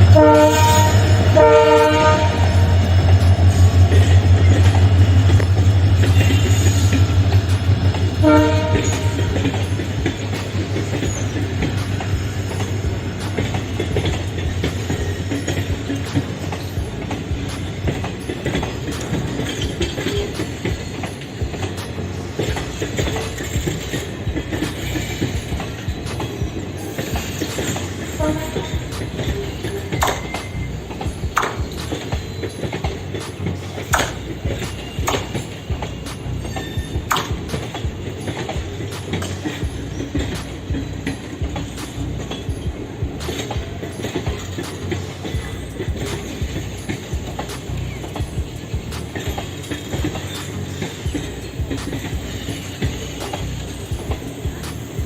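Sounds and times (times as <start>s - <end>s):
train horn blast: 0.0s - 9.8s, 28.1s - 29.2s
diesel locomotive engine drone: 0.0s - 55.0s
wheels clicking over rail joints: 0.0s - 55.0s.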